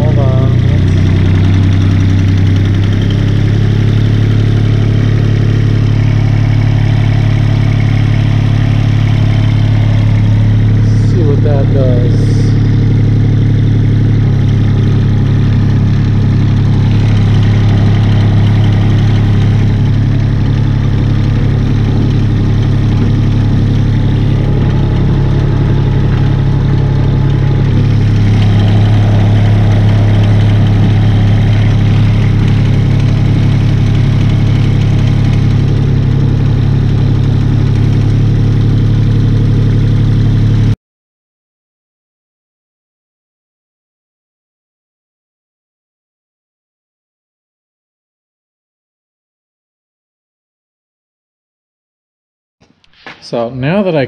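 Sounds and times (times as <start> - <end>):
diesel engine running: 0.0 - 40.8.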